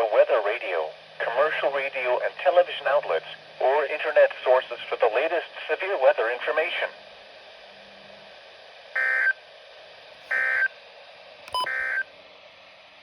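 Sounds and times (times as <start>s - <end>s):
faint radio hiss: 0.0s - 7.0s
short buzzy data tones: 10.3s - 10.7s, 11.5s - 12.0s.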